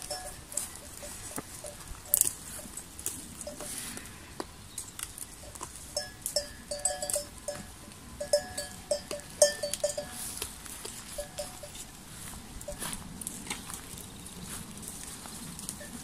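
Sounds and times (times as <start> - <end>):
animal bells clanking: 0.0 - 11.9, 12.6 - 13.0, 15.7 - 16.0.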